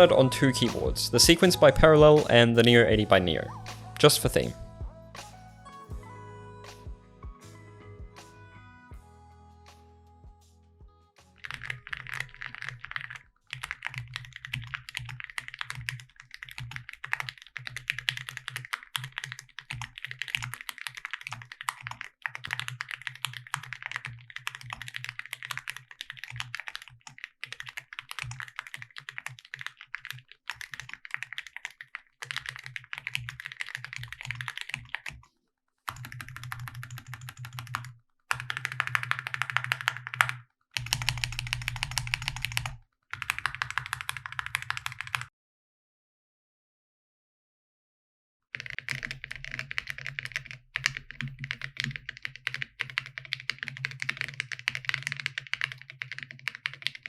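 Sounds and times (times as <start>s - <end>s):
fast typing on mechanical keyboard: 11.4s - 35.2s, 35.9s - 45.3s, 48.6s - 57.0s.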